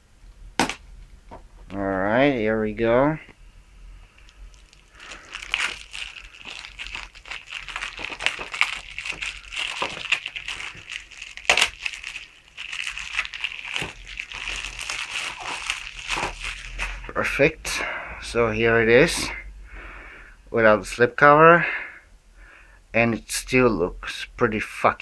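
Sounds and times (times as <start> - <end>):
plastic packaging crinkling: 4.0 - 17.6.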